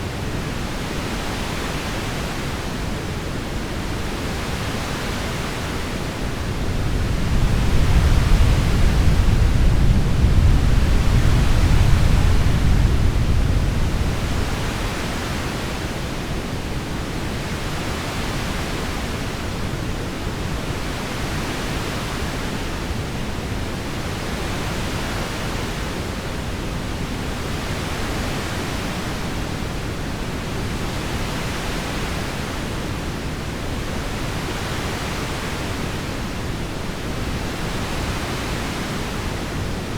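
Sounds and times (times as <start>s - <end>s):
heavy rain: 6.5s - 15.4s
low rumble of thunder: 6.6s - 15.2s.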